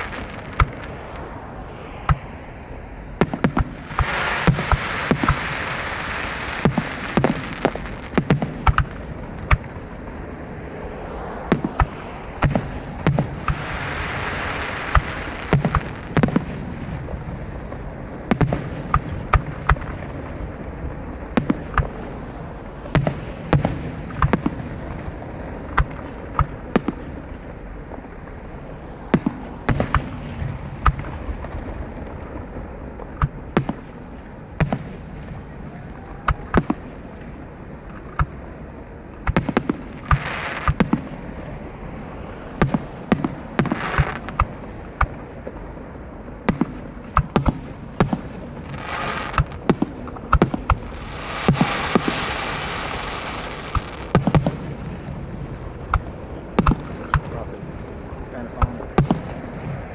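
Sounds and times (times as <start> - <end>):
fireworks hiss: 0.0 - 8.8, 46.6 - 55.5
fireworks bursting: 0.0 - 59.9
fireworks rumble and crackle: 0.0 - 59.9.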